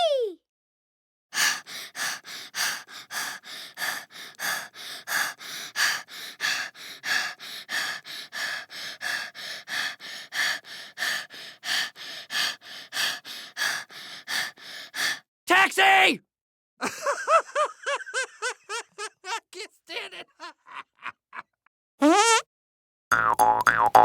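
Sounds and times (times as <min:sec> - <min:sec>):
rapid rhythmic panting: 0:01.4 - 0:15.2.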